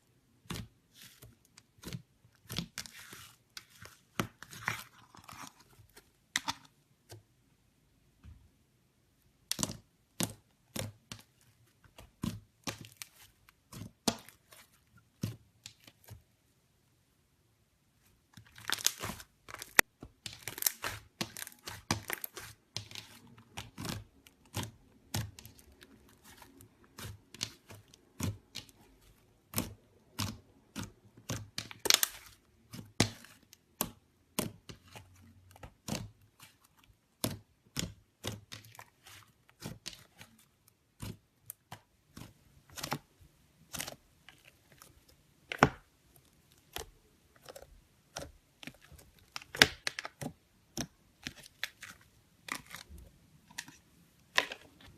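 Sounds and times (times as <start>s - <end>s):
slime clicking and crackling: 18.4s - 54.9s.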